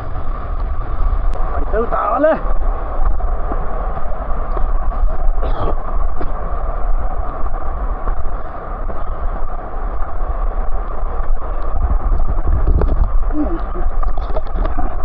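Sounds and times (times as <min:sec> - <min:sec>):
waterfall roaring: 0:03.7 - 0:15.0.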